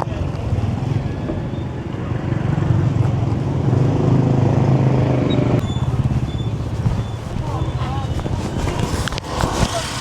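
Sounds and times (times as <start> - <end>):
street market hubbub: 0.0 - 10.0
motorbike engine running: 5.6 - 10.0.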